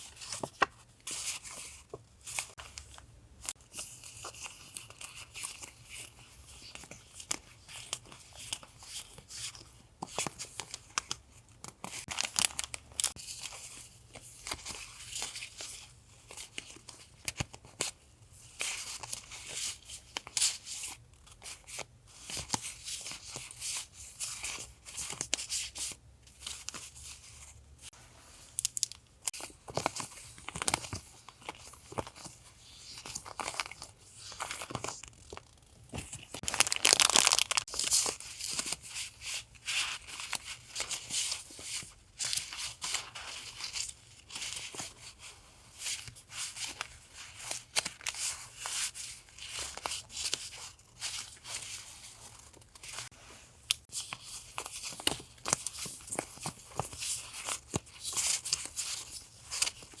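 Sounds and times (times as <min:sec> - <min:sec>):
packaging rustling and crinkling: 0:10.5 - 0:13.2, 0:28.3 - 0:45.2.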